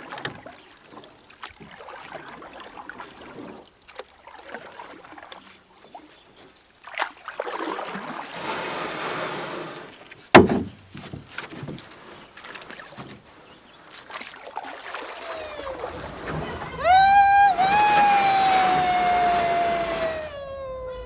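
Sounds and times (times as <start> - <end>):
paddle strokes splashing: 0.0 - 20.4
water sloshing: 0.0 - 20.4
sharp hollow knock: 10.4 - 10.8
rushing splash: 14.1 - 20.4.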